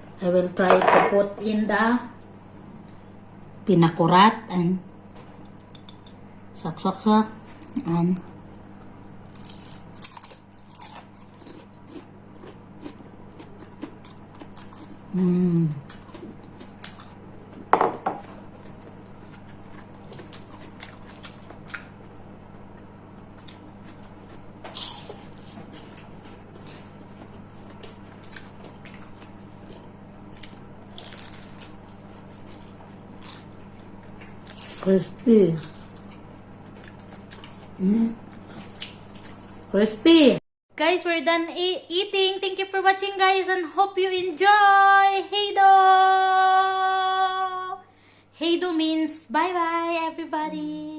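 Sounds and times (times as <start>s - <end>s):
steady low hum: 0.0s - 50.9s
person humming: 15.1s - 15.9s, 37.8s - 38.2s, 45.8s - 47.8s.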